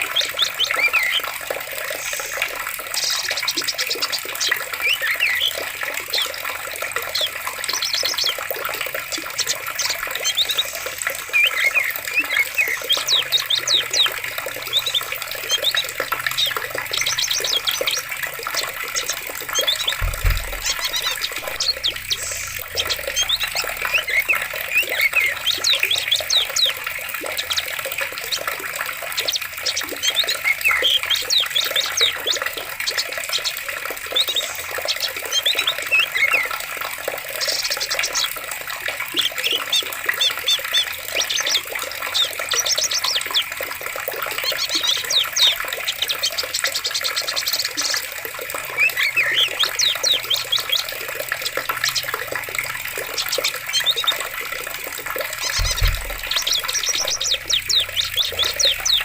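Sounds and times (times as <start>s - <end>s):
birds chirping and trilling: 0.0s - 59.0s
water rushing: 0.0s - 59.0s
low thump: 19.9s - 22.2s, 55.6s - 56.4s.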